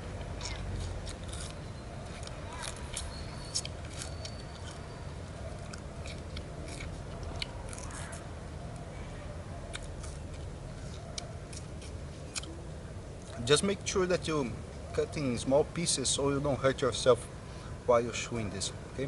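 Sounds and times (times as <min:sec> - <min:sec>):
low background hum: 0:00.0 - 0:19.0
chewing sugarcane crunchy clicks: 0:00.2 - 0:08.9, 0:09.7 - 0:12.6.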